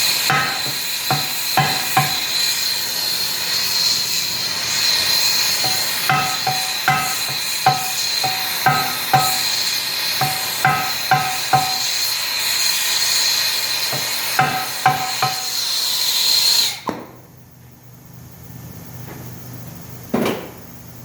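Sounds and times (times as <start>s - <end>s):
steady hiss: 0.0s - 16.8s
hammer blows on metal rim: 5.6s - 12.0s.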